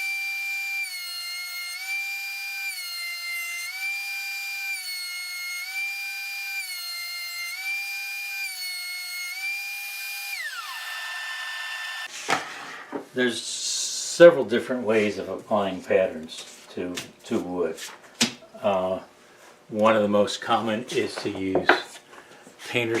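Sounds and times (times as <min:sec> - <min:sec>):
thickness planer motor whine: 0:00.0 - 0:12.1.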